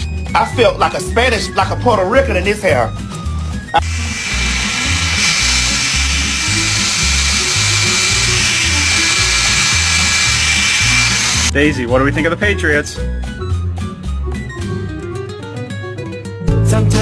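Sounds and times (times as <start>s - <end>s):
small motor hissing and whining: 3.8s - 11.5s.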